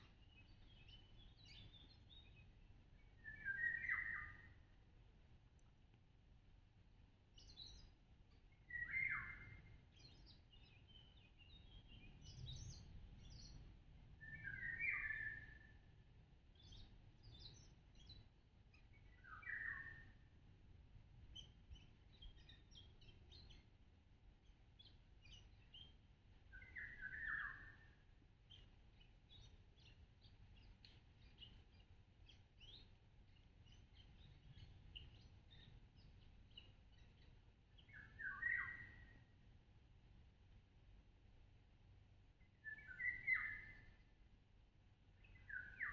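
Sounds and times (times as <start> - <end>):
small high bird chirps: 0.0 - 4.7, 7.3 - 20.3, 21.3 - 23.8, 24.4 - 39.4, 42.3 - 44.3, 45.0 - 45.9
bird calls: 3.0 - 4.6, 26.5 - 39.2, 42.6 - 44.0, 45.2 - 45.9.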